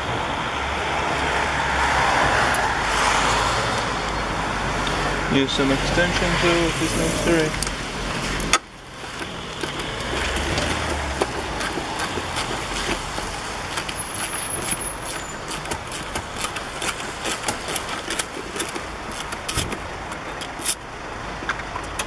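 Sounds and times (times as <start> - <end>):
traffic rush: 0.0 - 22.0
ratchet clicking: 13.8 - 20.8.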